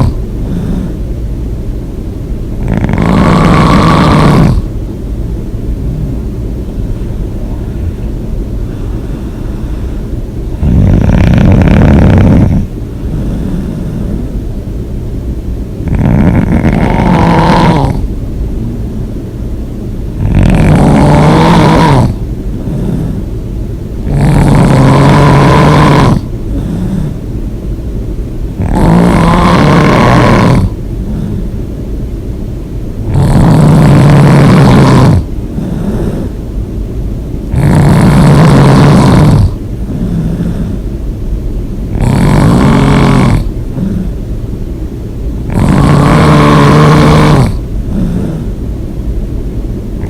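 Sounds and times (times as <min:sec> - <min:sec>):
person snoring loudly: 0:00.0 - 0:01.0, 0:02.6 - 0:04.7, 0:10.5 - 0:14.4, 0:15.8 - 0:18.9, 0:20.2 - 0:23.3, 0:24.0 - 0:27.2, 0:28.6 - 0:31.6, 0:33.1 - 0:36.4, 0:37.5 - 0:40.8, 0:41.9 - 0:44.1, 0:45.5 - 0:48.6
quiet breathing: 0:00.0 - 0:01.2, 0:05.7 - 0:11.0, 0:12.2 - 0:14.8, 0:22.1 - 0:24.0, 0:26.2 - 0:27.5, 0:30.6 - 0:31.9, 0:35.2 - 0:36.7, 0:39.3 - 0:41.2, 0:41.8 - 0:44.5, 0:45.9 - 0:48.8.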